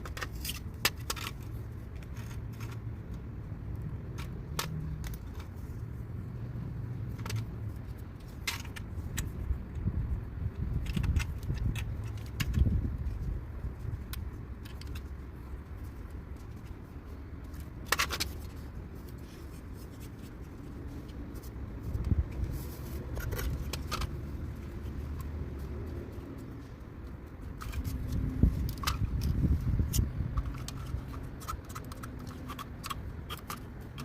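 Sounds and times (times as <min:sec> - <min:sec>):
scrapes and rustles: 0:00.0 - 0:03.3, 0:04.1 - 0:34.0
steady low rumble: 0:00.0 - 0:34.0.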